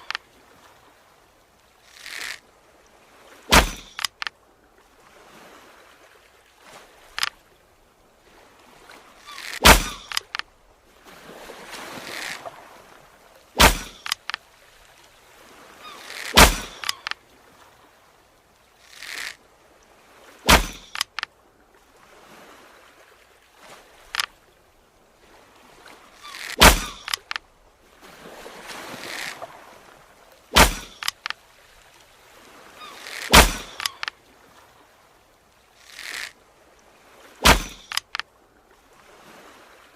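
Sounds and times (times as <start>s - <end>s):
arrow shot crack: 3.5s - 4.2s, 9.4s - 10.3s, 13.6s - 14.3s, 16.2s - 17.1s, 20.5s - 21.2s, 26.4s - 27.4s, 30.5s - 31.3s, 33.1s - 34.1s, 37.4s - 38.2s.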